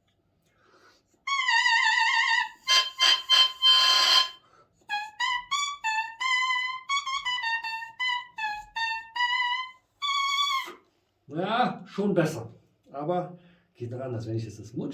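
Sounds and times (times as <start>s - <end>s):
oboe reed squawking: 1.3s - 10.8s.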